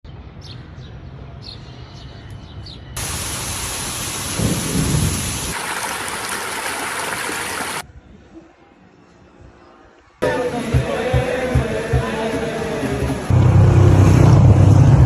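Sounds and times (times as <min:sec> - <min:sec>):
thunder rumble: 0:03.0 - 0:06.3
heavy rain: 0:03.0 - 0:07.8.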